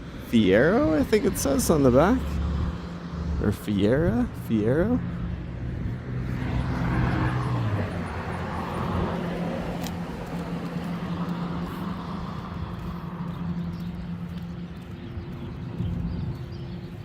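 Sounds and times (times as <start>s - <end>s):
road noise: 0.0s - 17.0s
vehicle engine humming: 0.0s - 17.0s.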